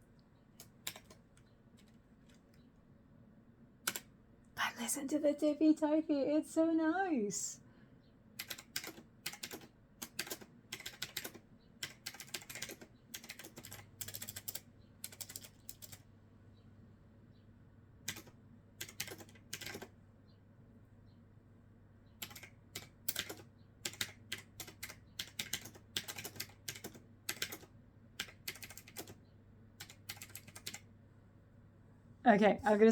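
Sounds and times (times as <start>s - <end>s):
clicky keyboard typing: 0.6s - 2.7s, 3.8s - 4.1s, 8.4s - 16.1s, 18.0s - 20.0s, 22.2s - 30.9s.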